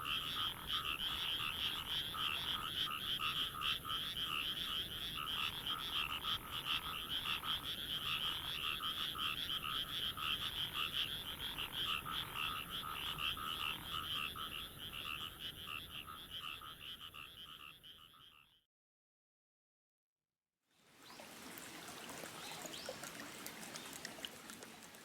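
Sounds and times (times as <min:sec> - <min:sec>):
frogs trilling: 0:00.0 - 0:18.6.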